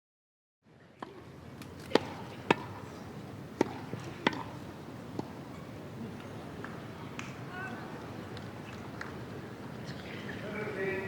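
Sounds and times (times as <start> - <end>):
low crowd ambience: 0.6 - 11.0
tennis ball struck and bouncing: 1.0 - 2.8, 3.6 - 5.5.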